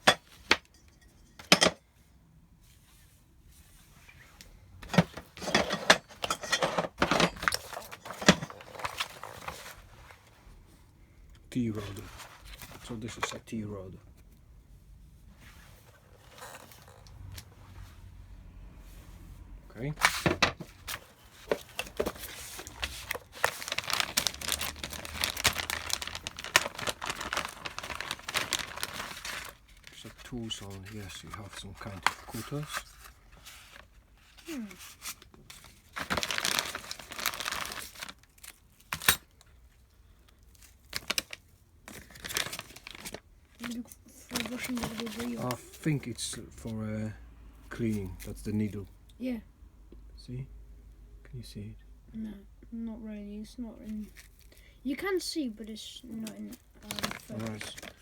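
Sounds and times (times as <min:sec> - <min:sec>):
packaging crinkling and rustling: 0:04.8 - 0:10.3, 0:20.1 - 0:46.1, 0:53.9 - 0:54.6, 0:55.9 - 0:58.0.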